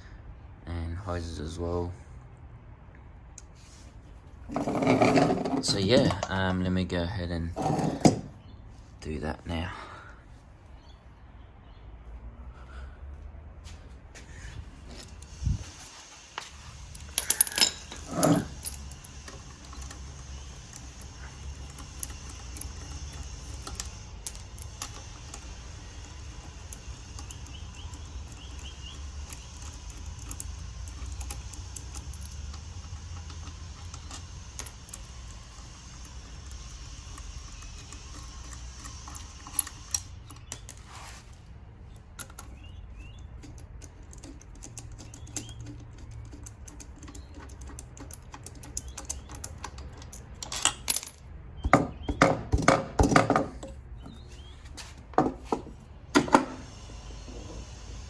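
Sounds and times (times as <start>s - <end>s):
metal tools clinking: 16.4s - 52.0s.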